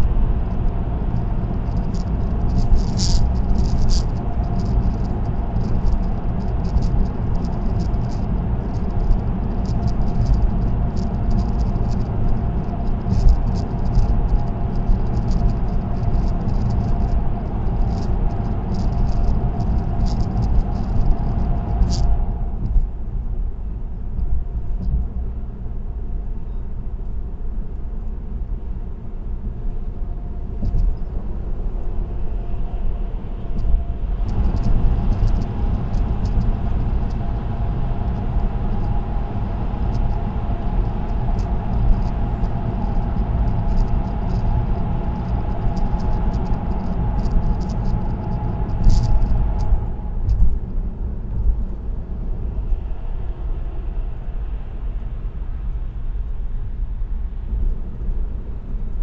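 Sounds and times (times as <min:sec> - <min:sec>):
tyre and road rumble: 0:00.0 - 0:23.0, 0:33.1 - 0:55.1
steady hum: 0:00.0 - 0:59.0.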